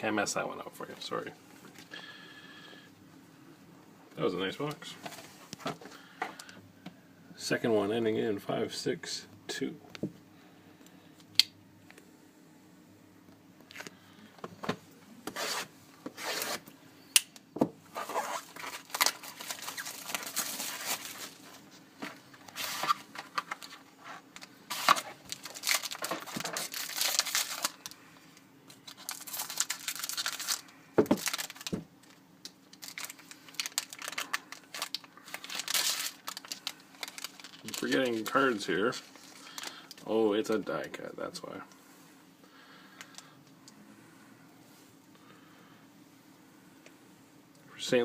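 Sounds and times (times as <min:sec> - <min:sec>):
plastic wrap crinkling and tearing: 0:18.0 - 0:21.7, 0:22.4 - 0:28.0, 0:28.7 - 0:40.7.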